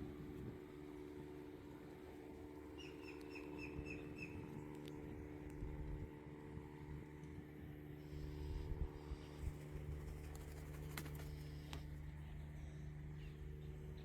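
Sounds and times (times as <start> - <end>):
steady low hum: 0.0 - 14.0
bird chirping: 2.8 - 4.4.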